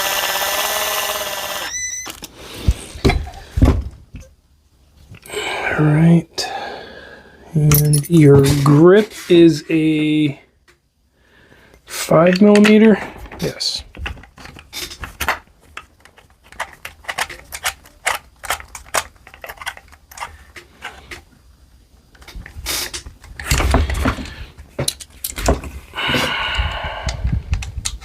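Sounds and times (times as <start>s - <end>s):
handling and scraping: 7.6s - 10.0s, 11.8s - 21.4s.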